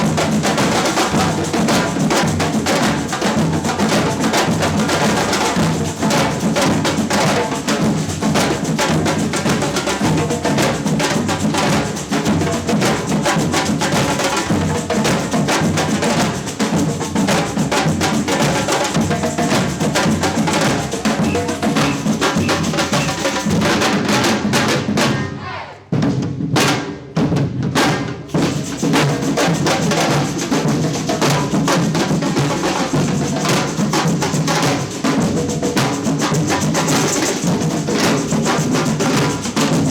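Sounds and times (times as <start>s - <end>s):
bass drums: 0.0s - 25.2s
samba percussion band playing: 0.0s - 39.9s
snare drums: 0.0s - 39.9s.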